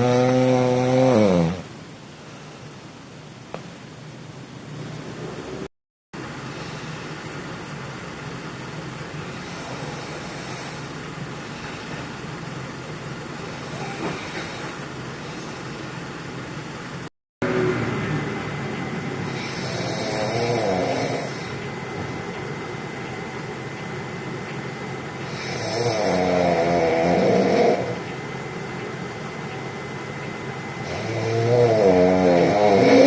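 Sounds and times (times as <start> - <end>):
person snoring: 0.0 - 1.7, 9.3 - 11.0, 13.4 - 15.5, 19.2 - 21.6, 25.3 - 28.1, 30.8 - 33.0
steady background hiss: 0.0 - 33.0.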